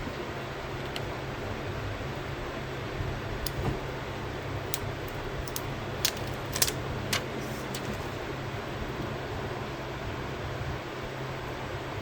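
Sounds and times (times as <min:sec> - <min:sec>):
steady hiss and low hum: 0:00.0 - 0:12.0
small hard objects clicking: 0:04.7 - 0:07.2.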